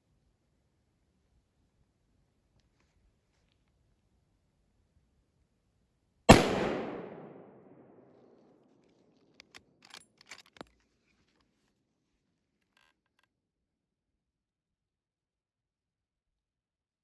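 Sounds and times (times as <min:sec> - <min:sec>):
rifle shot with echo: 0:06.3 - 0:08.1
small sharp clicks and knocks: 0:09.2 - 0:11.4.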